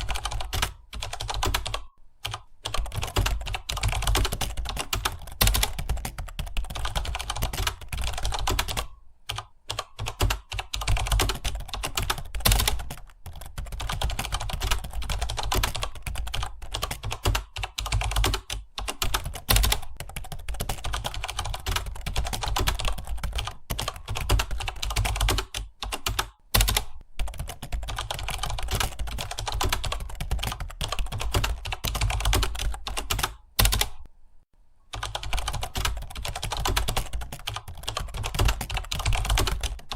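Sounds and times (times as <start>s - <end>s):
typing on computer keyboard: 0.0s - 34.1s, 34.9s - 39.9s.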